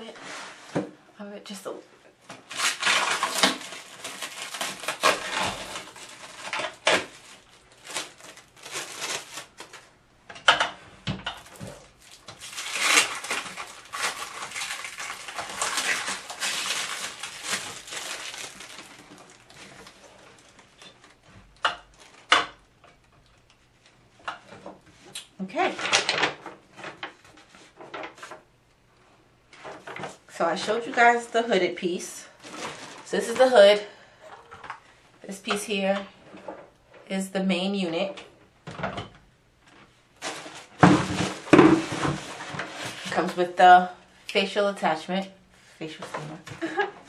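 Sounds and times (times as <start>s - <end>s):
plastic wrapping crinkling: 2.3s - 10.0s, 11.3s - 22.6s, 32.3s - 33.6s, 40.2s - 43.4s.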